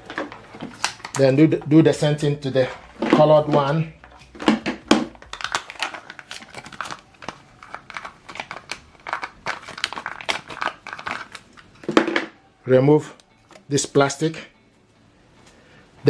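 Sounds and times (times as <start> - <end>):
plastic packaging crinkling and tearing: 4.3 - 11.5.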